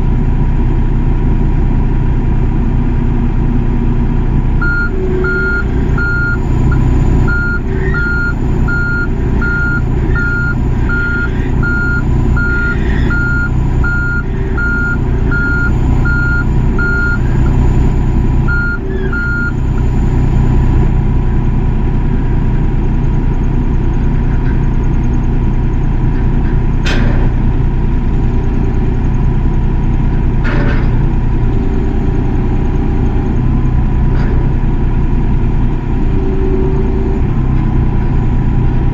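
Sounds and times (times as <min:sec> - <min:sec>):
excavator diesel engine running: 0:00.0 - 0:38.9
reversing alarm beeping: 0:04.6 - 0:20.4.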